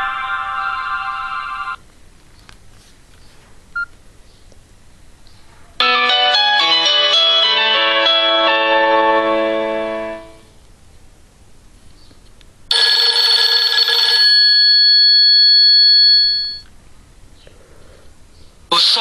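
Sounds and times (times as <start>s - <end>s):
mobile phone ringtone melody: 5.8s - 10.4s, 12.7s - 16.6s.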